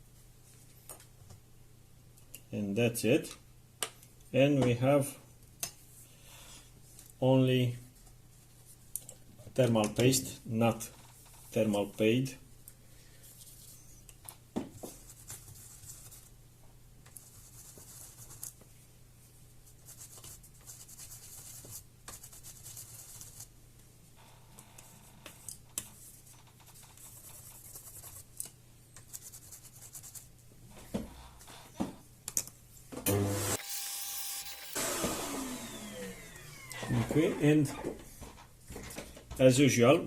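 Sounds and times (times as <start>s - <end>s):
scratchy rubbing and wiping: 14.9s - 16.3s, 17.2s - 18.6s, 19.7s - 23.5s, 25.9s - 28.4s, 29.0s - 30.4s.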